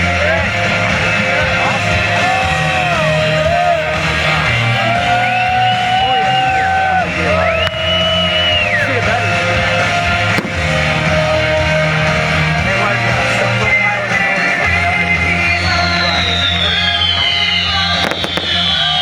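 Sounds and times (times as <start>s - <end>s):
rock music with electric guitar: 0.0s - 19.0s
person singing: 9.2s - 19.0s
sharp crack: 10.3s - 10.9s, 18.0s - 18.8s.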